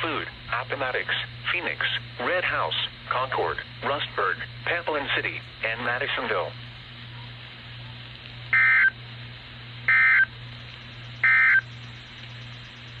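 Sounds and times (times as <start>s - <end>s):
low hum: 0.0s - 13.0s
radio hiss: 0.0s - 13.0s
digital data tone bursts: 8.6s - 9.0s, 9.9s - 10.3s, 11.2s - 11.8s.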